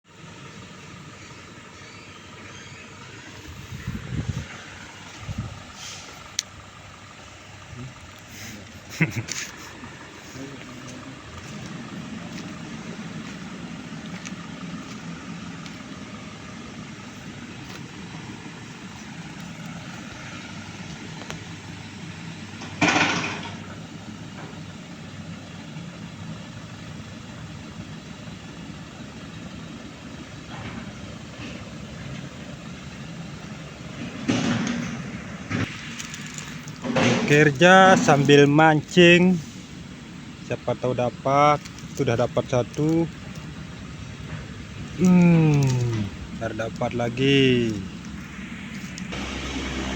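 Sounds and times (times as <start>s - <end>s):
machine engine idling: 0.1s - 49.9s.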